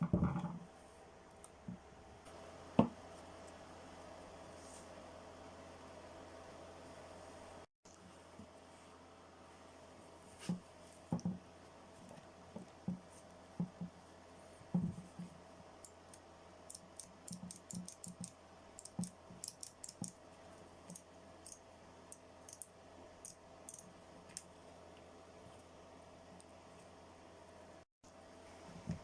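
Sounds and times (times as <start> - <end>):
sharp clicks of small parts: 15.8 - 20.2, 20.9 - 24.5.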